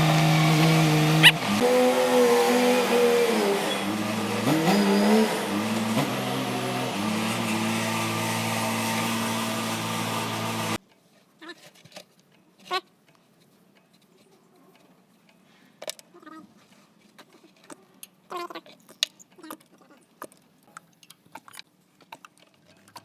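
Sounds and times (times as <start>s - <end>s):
vehicle engine revving: 0.0s - 10.8s.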